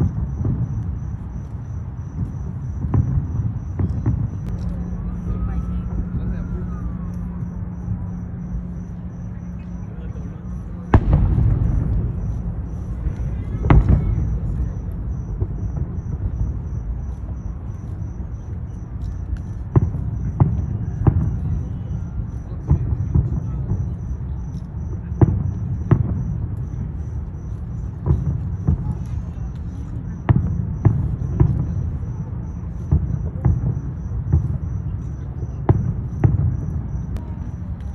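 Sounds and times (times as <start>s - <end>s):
constant low rumble: 0.0s - 37.9s
fireworks bangs: 0.0s - 37.9s.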